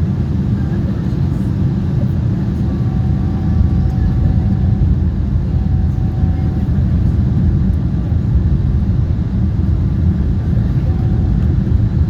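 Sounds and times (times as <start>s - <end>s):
airliner low rumble: 0.0s - 12.0s
faint whine tones: 2.6s - 7.4s, 10.2s - 12.0s.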